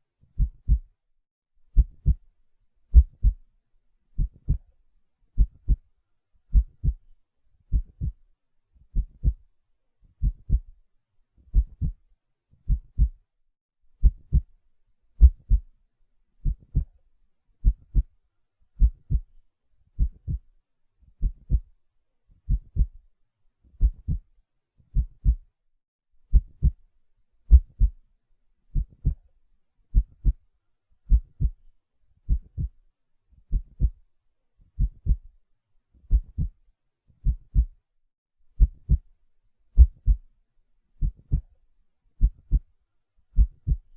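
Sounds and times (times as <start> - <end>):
heartbeat: 0.4 - 0.9, 1.8 - 2.2, 2.9 - 3.4, 4.2 - 4.7, 5.4 - 5.8, 6.5 - 7.0, 7.7 - 8.2, 8.9 - 9.4, 10.2 - 10.7, 11.5 - 12.0, 12.7 - 13.2, 14.0 - 14.5, 15.2 - 15.7, 16.4 - 17.0, 17.6 - 18.1, 18.8 - 19.3, 20.0 - 20.5, 21.2 - 21.7, 22.5 - 23.0, 23.8 - 24.2, 24.9 - 25.5, 26.3 - 26.8, 27.5 - 28.0, 28.8 - 29.2, 29.9 - 30.4, 31.1 - 31.6, 32.3 - 32.8, 33.5 - 34.0, 34.8 - 35.3, 36.1 - 36.6, 37.2 - 37.8, 38.6 - 39.0, 39.8 - 40.2, 41.0 - 41.5, 42.2 - 42.6, 43.4 - 43.9.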